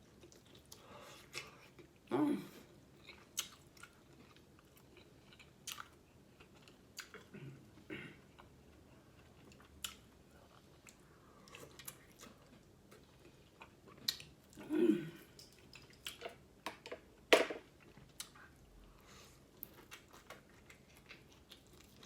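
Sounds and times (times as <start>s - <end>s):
close chewing with wet smacks: 0.0s - 2.1s, 3.0s - 7.3s, 8.3s - 14.6s, 19.6s - 22.0s.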